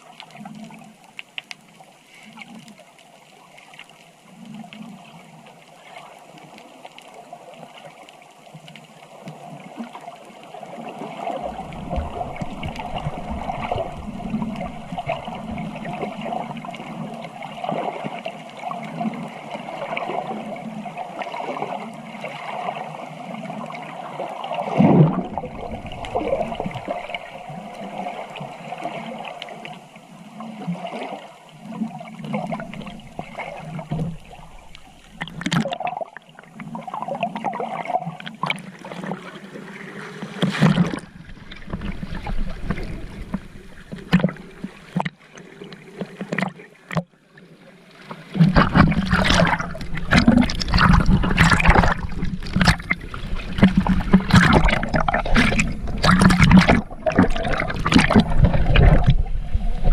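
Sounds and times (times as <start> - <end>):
water sloshing and gurgling: 0.0 - 59.9
water splashes and crackles: 0.0 - 59.9.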